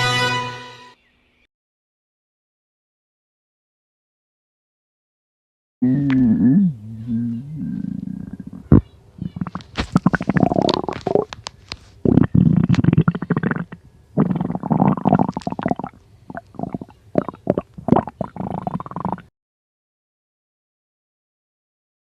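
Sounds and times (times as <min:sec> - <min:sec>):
stomach growling: 0:05.8 - 0:11.4, 0:12.0 - 0:19.3.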